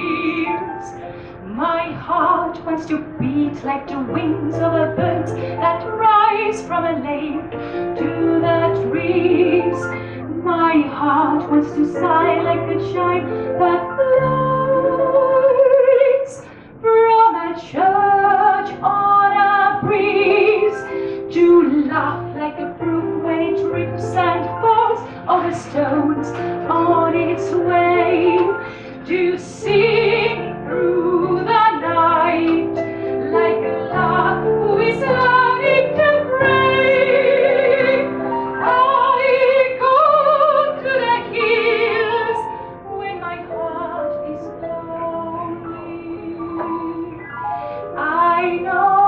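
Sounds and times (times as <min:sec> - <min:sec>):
woman singing: 0:00.0 - 0:47.2, 0:47.9 - 0:49.0
instrumental accompaniment: 0:17.7 - 0:49.0.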